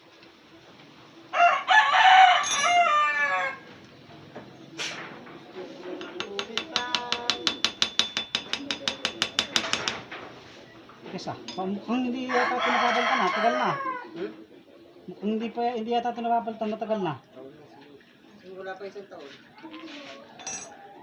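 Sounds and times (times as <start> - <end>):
rooster crowing: 1.3 - 3.8, 12.2 - 14.2, 20.2 - 21.0.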